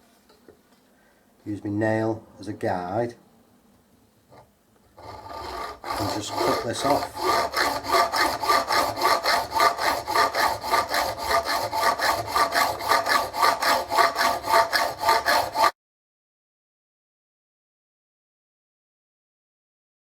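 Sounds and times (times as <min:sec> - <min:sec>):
hand saw cutting metal: 0:05.0 - 0:15.8.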